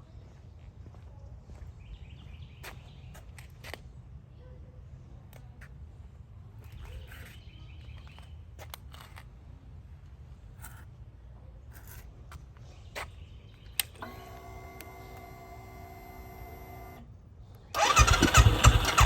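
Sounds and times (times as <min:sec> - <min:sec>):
outdoor background rumble: 0:08.7 - 0:19.0
motorcycle engine starting: 0:13.8 - 0:17.1, 0:17.7 - 0:19.0.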